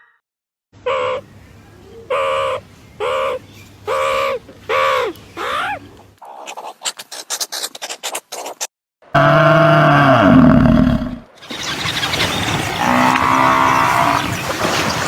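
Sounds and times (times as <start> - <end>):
animal calling: 0.8 - 1.2, 2.0 - 8.5.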